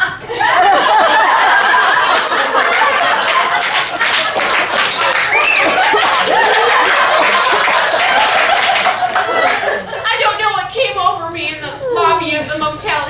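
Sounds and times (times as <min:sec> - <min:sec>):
audience laughing: 0:00.0 - 0:10.0
audience applauding: 0:00.9 - 0:10.0.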